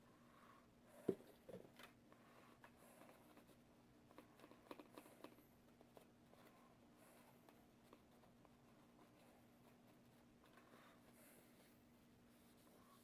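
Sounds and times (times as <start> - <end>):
low steady hum: 0.0 - 13.0
faint small clicks and taps: 4.1 - 6.6.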